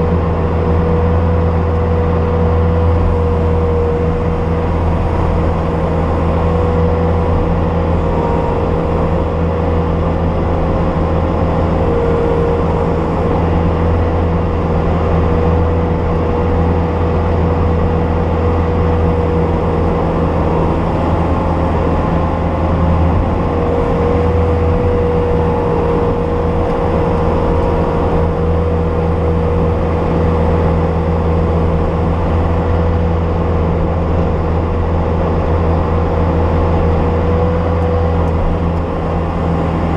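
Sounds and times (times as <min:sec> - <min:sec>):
engine running under load: 0:00.0 - 0:39.9.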